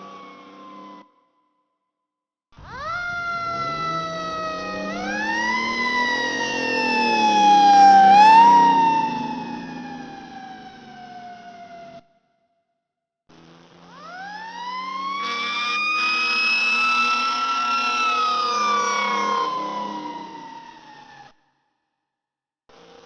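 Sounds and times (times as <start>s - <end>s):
fire truck siren wailing: 0.0s - 1.0s, 2.6s - 12.0s, 13.9s - 21.4s.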